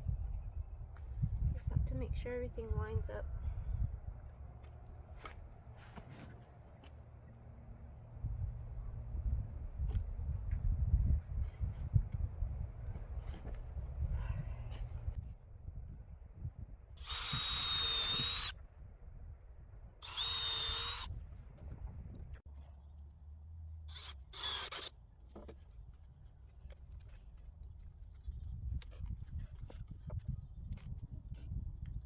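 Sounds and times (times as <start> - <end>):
wind buffeting microphone: 0.0 - 5.1, 7.8 - 22.4, 27.5 - 32.0
power drill motor whine: 17.0 - 18.5, 20.0 - 21.1, 23.9 - 24.9.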